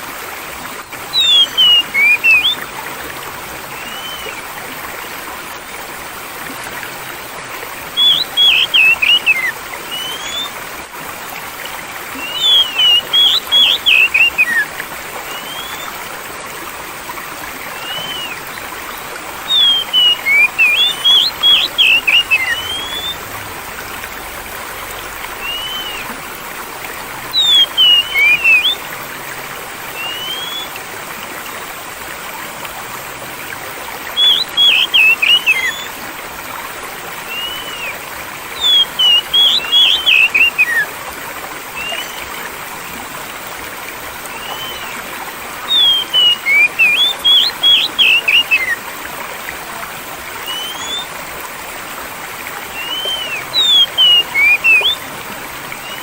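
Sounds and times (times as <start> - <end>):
flowing stream: 0.0 - 56.0
bird singing whistled notes: 1.1 - 2.6, 3.7 - 4.4, 7.9 - 10.6, 12.2 - 14.7, 15.3 - 16.0, 17.7 - 18.5, 19.5 - 23.2, 25.4 - 26.1, 27.3 - 28.8, 29.9 - 30.7, 34.1 - 35.9, 37.2 - 38.0, 38.6 - 40.9, 41.8 - 42.4, 44.3 - 45.0, 45.7 - 48.8, 50.4 - 51.1, 52.7 - 55.1, 55.8 - 56.0.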